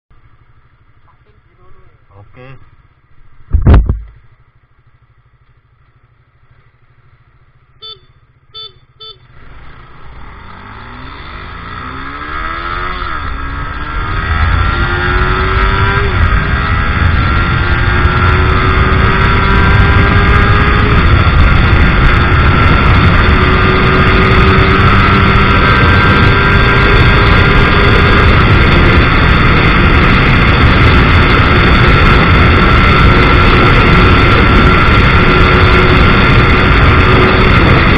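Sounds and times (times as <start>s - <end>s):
motorcycle engine accelerating: 0.2s - 37.9s
short beeps: 7.8s - 9.3s
wind rush: 11.0s - 37.9s.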